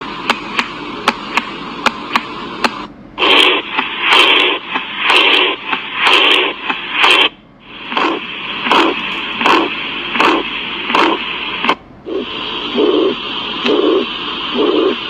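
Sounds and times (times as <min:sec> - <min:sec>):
steady hiss: 0:00.0 - 0:15.0
heartbeat through a stethoscope: 0:07.9 - 0:15.0.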